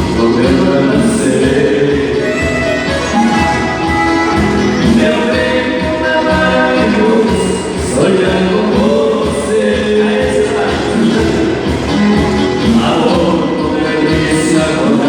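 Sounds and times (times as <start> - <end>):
live band playing dance music: 0.0 - 15.0.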